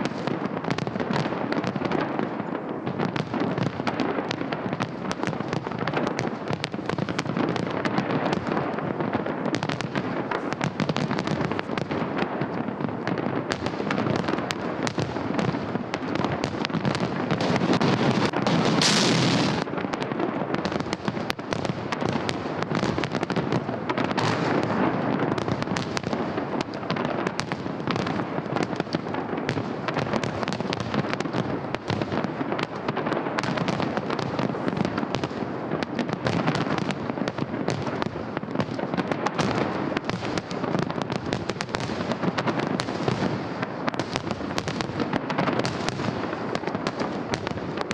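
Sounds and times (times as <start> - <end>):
fireworks crackling: 0.0 - 47.9
fireworks hissing whoosh: 16.9 - 19.8.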